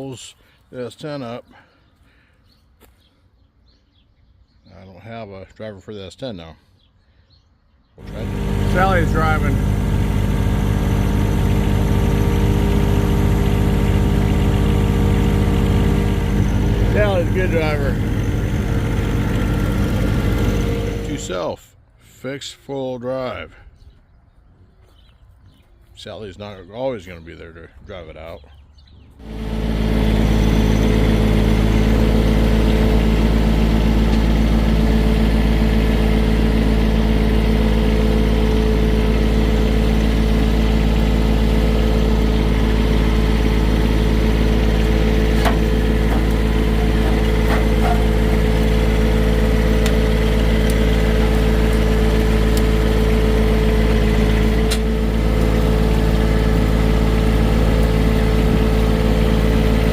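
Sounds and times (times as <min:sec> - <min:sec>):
steady whine: 0:08.0 - 0:21.4, 0:29.2 - 0:59.9
tractor diesel engine running: 0:08.0 - 0:21.5, 0:29.2 - 0:59.9.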